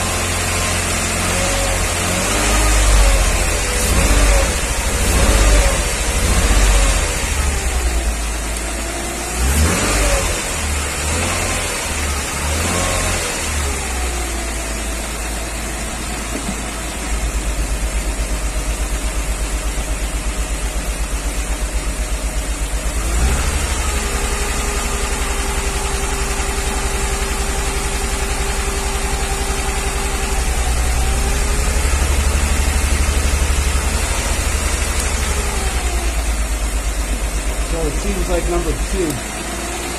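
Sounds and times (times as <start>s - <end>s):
car engine running at fast idle: 0.0s - 39.9s
light metallic engine tick: 36.4s - 39.4s.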